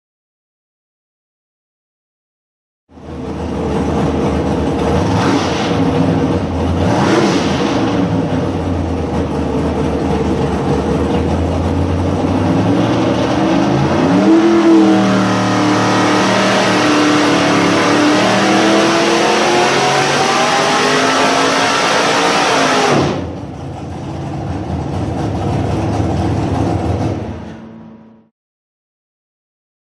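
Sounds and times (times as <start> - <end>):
racing engine revving on a dyno: 3.0 - 23.6.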